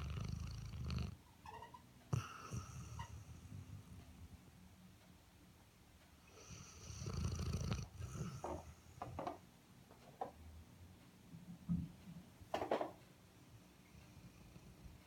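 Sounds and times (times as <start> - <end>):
dog snoring: 0.0 - 1.2, 2.1 - 4.0, 6.3 - 9.1.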